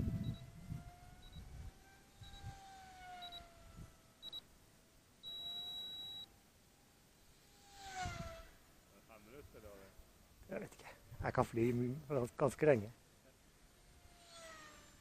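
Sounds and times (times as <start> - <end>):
electric motor and propeller whining: 0.0 - 10.4, 13.6 - 15.0
electronic beeps: 0.2 - 0.6, 1.2 - 1.5, 3.2 - 3.5, 4.2 - 4.5, 5.2 - 6.3.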